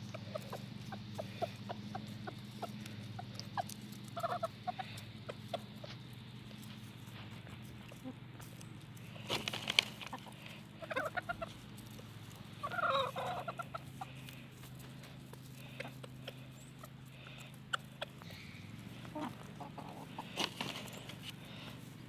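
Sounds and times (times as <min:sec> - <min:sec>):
chickens clucking: 0:00.0 - 0:22.0.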